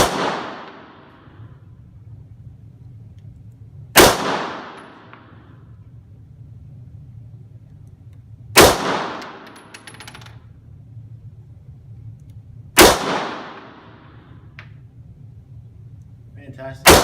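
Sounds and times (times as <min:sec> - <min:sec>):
gunshots: 0:00.0 - 0:01.0, 0:04.0 - 0:05.0, 0:08.6 - 0:09.4, 0:12.8 - 0:13.9.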